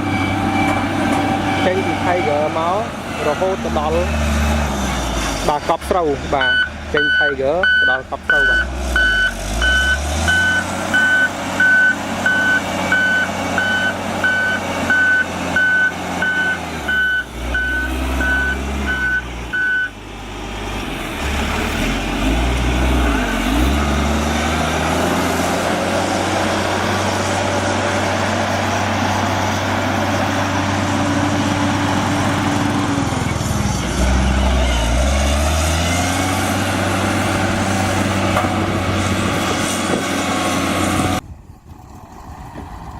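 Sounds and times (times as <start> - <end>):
reversing alarm beeping: 0.0 - 3.5, 6.4 - 20.0
diesel machine engine running: 0.0 - 42.9.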